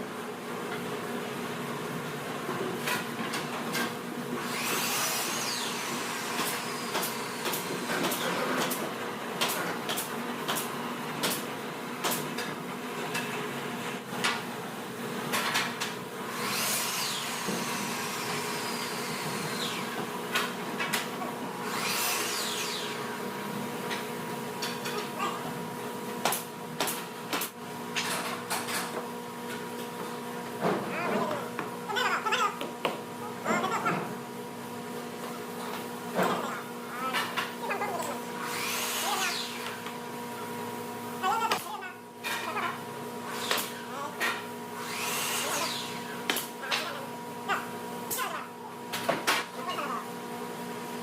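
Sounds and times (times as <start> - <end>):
power tool bursts: 4.4 - 7.7, 16.3 - 19.9, 21.7 - 23.0, 38.4 - 39.8, 44.8 - 46.5.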